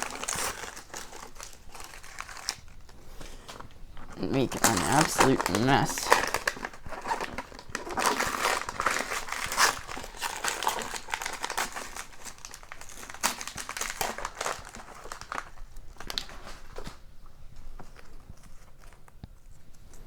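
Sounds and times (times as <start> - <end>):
wrapping paper tearing and crinkling: 0.0 - 17.0.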